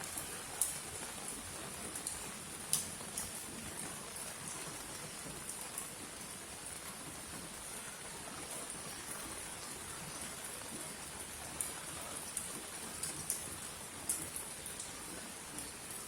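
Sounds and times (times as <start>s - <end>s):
raindrops splashing: 0.0s - 16.0s
steady rain falling: 0.0s - 16.0s.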